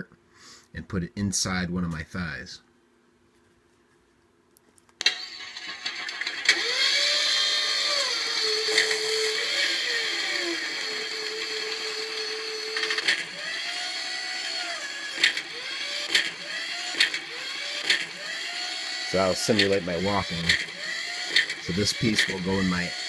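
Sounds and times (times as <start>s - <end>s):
robotic servo whining: 5.2s - 23.0s.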